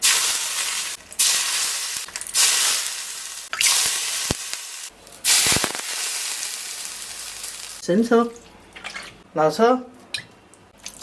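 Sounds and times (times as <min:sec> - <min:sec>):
hot oil sizzling: 0:00.0 - 0:07.9.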